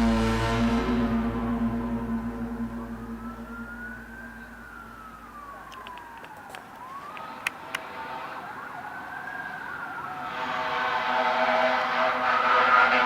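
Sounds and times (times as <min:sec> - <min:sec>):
low hum: 0:00.0 - 0:07.7
siren-like wailing tone: 0:00.0 - 0:13.0
sharp clicks: 0:05.6 - 0:07.9.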